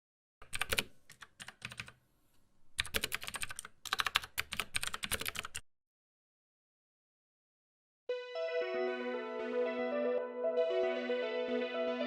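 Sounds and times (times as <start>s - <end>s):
typing on a computer keyboard: 0.4s - 2.0s, 2.8s - 5.6s.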